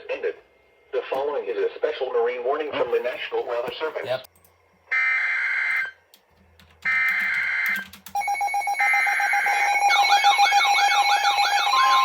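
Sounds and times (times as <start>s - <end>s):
steady alarm tone: 4.9s - 6.0s, 6.9s - 12.0s
warbling siren-like tone: 8.2s - 12.0s.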